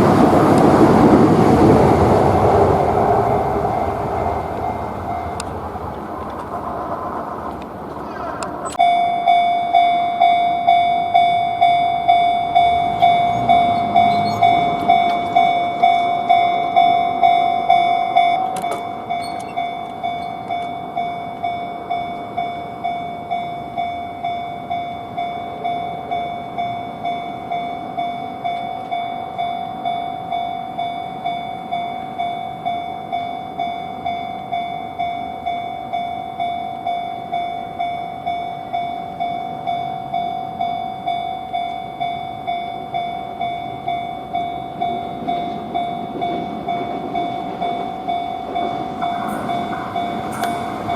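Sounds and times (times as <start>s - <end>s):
low rumble: 0.0s - 8.8s
level-crossing alarm ringing: 1.0s - 50.9s.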